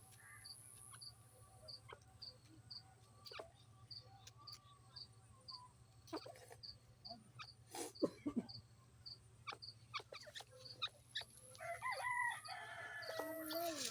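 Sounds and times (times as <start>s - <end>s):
partridge chirping: 0.0s - 7.6s, 8.5s - 13.9s
rooster crowing: 11.6s - 13.9s.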